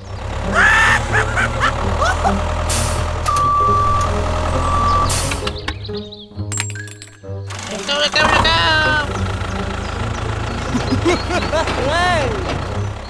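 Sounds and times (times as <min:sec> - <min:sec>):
vehicle engine humming: 0:00.0 - 0:13.0
short rising squeaks: 0:01.0 - 0:05.9
high beeps: 0:03.3 - 0:05.3.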